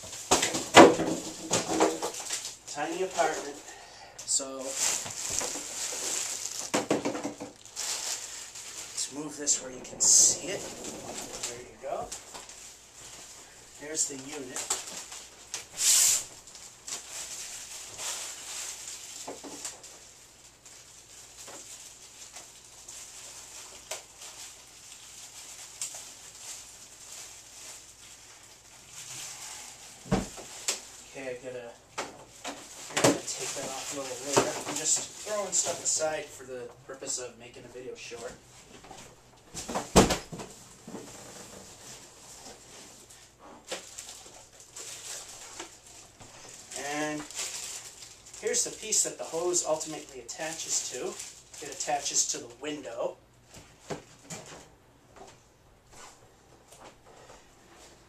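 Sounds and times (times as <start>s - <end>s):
packing material rustling: 0.0s - 3.7s, 4.6s - 31.6s, 32.2s - 36.4s, 38.1s - 54.4s
packing rustling and scraping: 4.6s - 6.8s, 7.5s - 13.4s, 38.6s - 52.3s.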